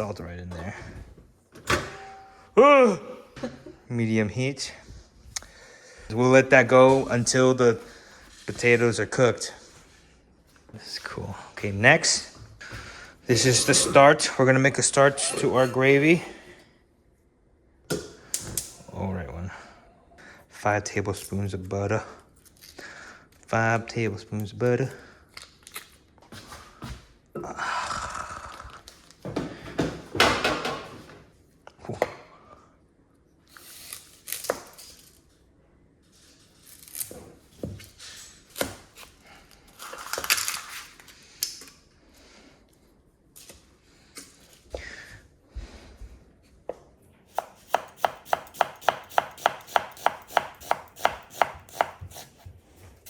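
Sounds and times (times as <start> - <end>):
knife chopping on cutting board: 47.4 - 52.4.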